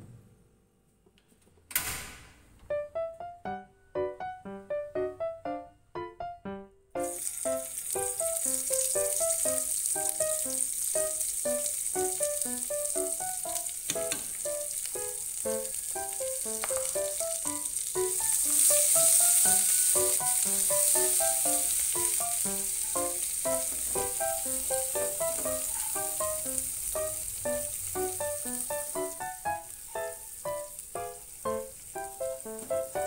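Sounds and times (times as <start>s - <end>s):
light melodic background music: 2.7s - 33.0s
food sizzling in hot oil: 7.0s - 33.0s.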